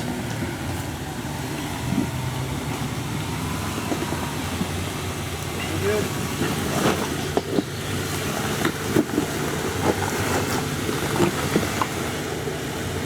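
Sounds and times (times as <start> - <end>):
car engine running at low revs: 0.0 - 13.0.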